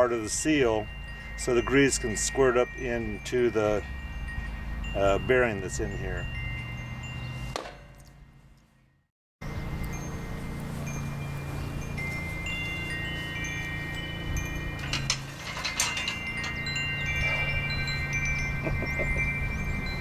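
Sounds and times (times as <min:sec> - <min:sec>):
wind chimes ringing: 0:00.0 - 0:20.0
metallic clinks: 0:09.8 - 0:20.0.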